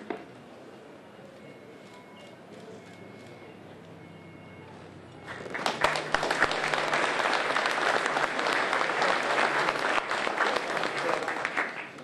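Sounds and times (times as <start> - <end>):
audience applauding: 5.2 - 12.0.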